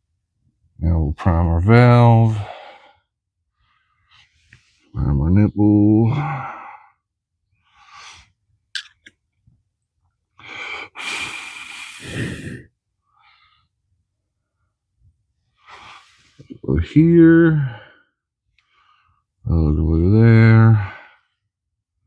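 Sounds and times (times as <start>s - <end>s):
person exhaling breathily: 10.5s - 12.6s.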